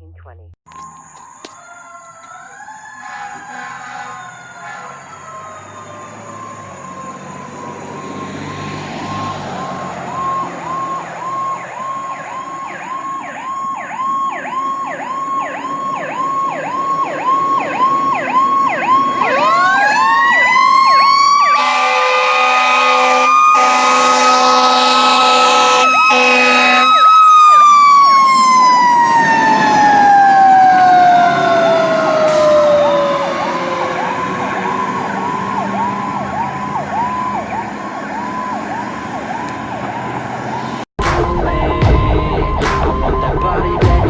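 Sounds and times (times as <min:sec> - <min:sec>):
electronic siren yelping: 0:00.7 - 0:44.0
siren wailing: 0:00.7 - 0:44.0
air horn blasts: 0:03.0 - 0:05.2, 0:21.5 - 0:27.1.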